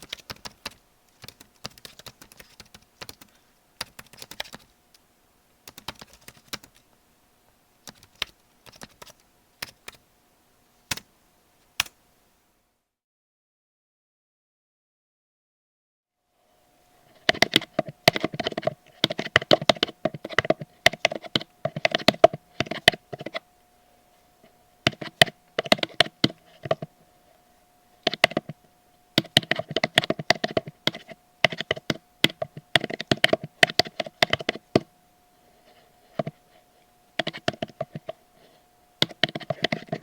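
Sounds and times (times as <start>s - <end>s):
keyboard typing clicks: 0.0s - 5.0s, 5.7s - 6.8s, 7.8s - 10.0s, 10.9s - 11.1s, 17.2s - 23.4s, 24.9s - 26.9s, 28.0s - 28.6s, 29.2s - 34.9s, 37.2s - 38.2s, 39.0s - 40.0s
faint steady hum: 0.0s - 13.0s, 16.1s - 40.0s.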